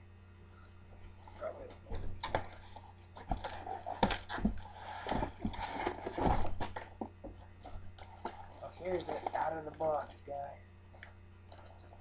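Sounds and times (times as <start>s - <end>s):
packaging rustling and scraping: 2.2s - 9.6s.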